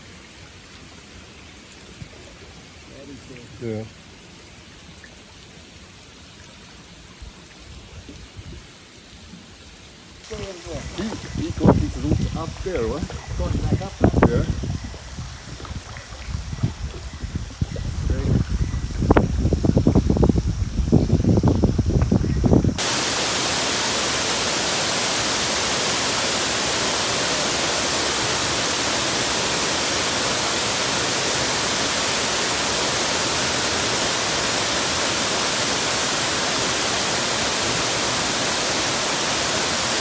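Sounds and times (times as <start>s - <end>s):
steady static hiss: 10.2s - 16.0s, 16.6s - 40.0s
low rumble of wind: 10.3s - 23.3s.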